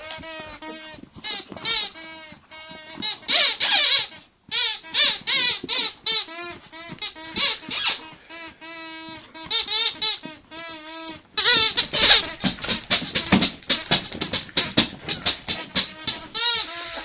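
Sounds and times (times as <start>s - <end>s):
squeaky dog toy squeaking: 0.0s - 8.2s, 8.9s - 17.0s
rapid clicking and rattling: 11.4s - 16.4s.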